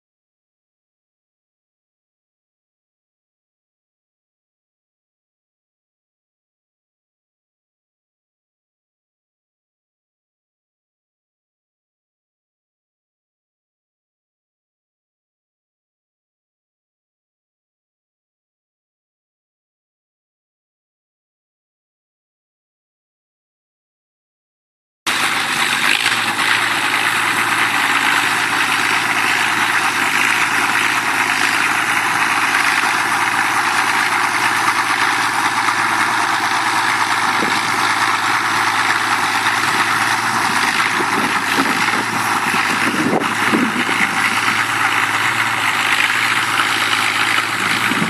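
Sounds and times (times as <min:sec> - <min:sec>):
tractor diesel engine running: 0:25.1 - 0:48.0.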